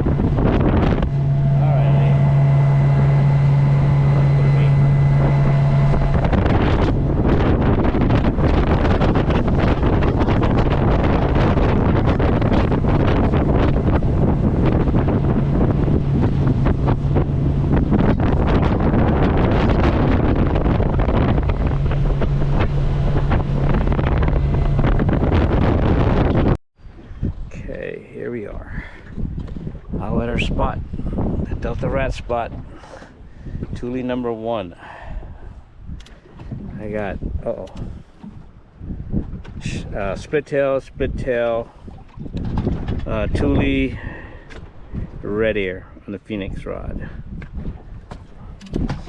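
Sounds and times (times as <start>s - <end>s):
boat motor humming: 0.0s - 27.6s, 41.1s - 49.0s
wind buffeting microphone: 0.0s - 49.0s.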